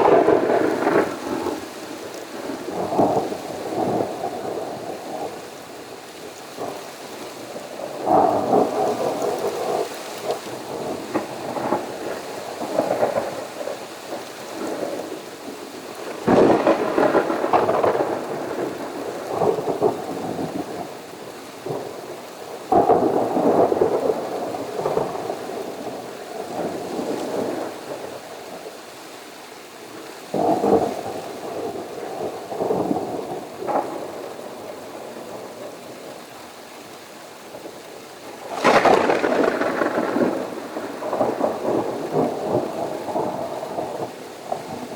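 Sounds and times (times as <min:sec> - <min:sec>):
thunder claps rolling: 0:00.0 - 0:01.8, 0:16.1 - 0:20.8, 0:38.4 - 0:44.9
steady rain: 0:00.0 - 0:44.9.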